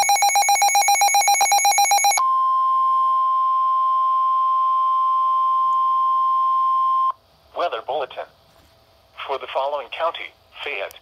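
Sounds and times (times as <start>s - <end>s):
steady warning alarm tone: 0.0s - 2.7s.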